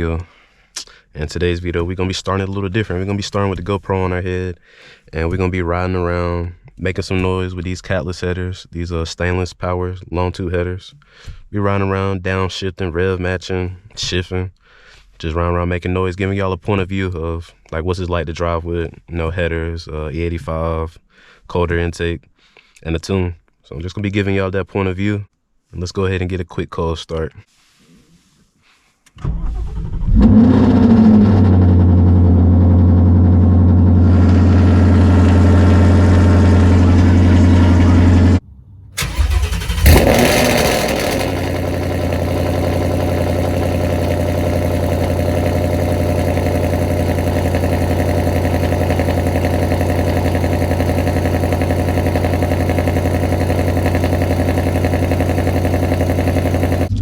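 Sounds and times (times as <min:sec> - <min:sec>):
car engine revving and idling: 0:30.1 - 0:38.4, 0:39.0 - 0:57.0
starter motor cranking: 0:39.0 - 0:56.9.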